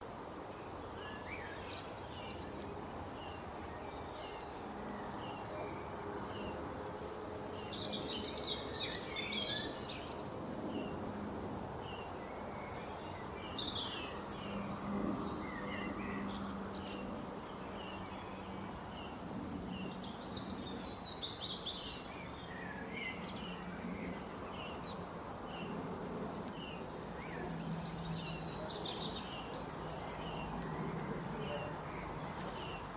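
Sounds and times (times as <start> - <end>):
birds chirping: 11.8 - 32.9.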